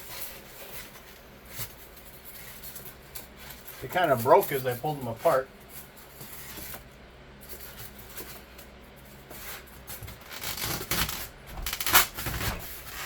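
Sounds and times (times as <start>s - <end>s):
foam board rubbing and scraping: 9.3s - 13.0s.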